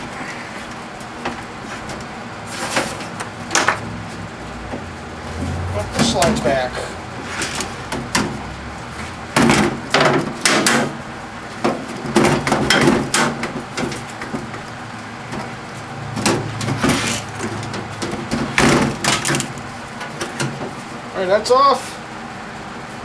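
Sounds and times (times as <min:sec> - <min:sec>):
metal parts scraping: 0:07.2 - 0:09.7, 0:16.1 - 0:19.6
metal parts clunking: 0:16.1 - 0:19.6.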